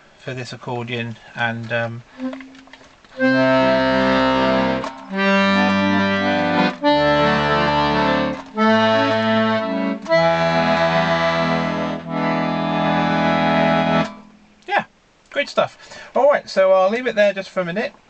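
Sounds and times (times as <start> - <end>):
accordion playing chords: 2.1 - 14.5.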